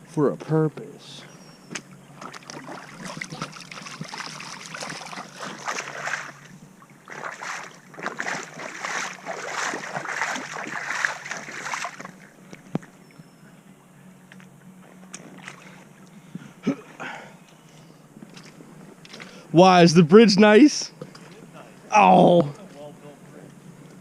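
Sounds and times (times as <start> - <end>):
footsteps splashing through water: 2.1 - 12.3.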